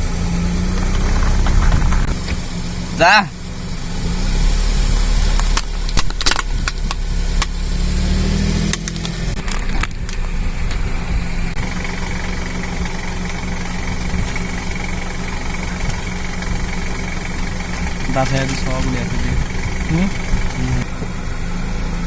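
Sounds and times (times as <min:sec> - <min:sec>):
car engine running: 0:00.0 - 0:22.0
objects crushed under tyres: 0:00.7 - 0:02.4.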